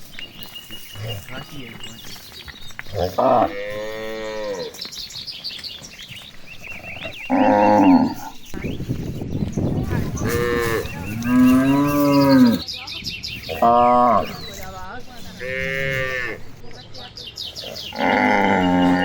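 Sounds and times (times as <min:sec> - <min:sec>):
cows mooing: 0:02.8 - 0:04.8, 0:06.7 - 0:08.5, 0:09.9 - 0:12.7, 0:13.5 - 0:19.0.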